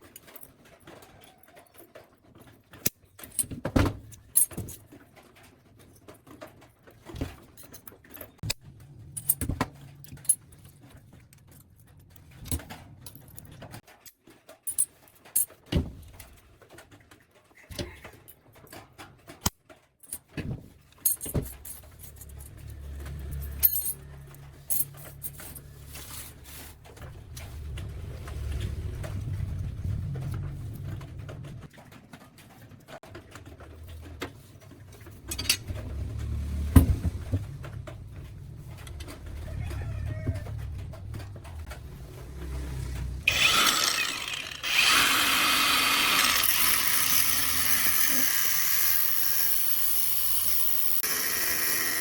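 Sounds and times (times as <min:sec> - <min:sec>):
metal parts and tools clinking: 0:00.0 - 0:16.9, 0:17.8 - 0:52.0
low rumble: 0:27.0 - 0:31.7.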